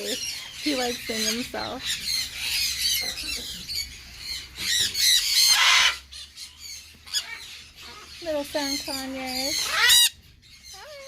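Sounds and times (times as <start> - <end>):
parrots chattering and squawking: 0.0 - 11.0
loud harsh parrot screech: 4.7 - 6.1, 9.6 - 10.2.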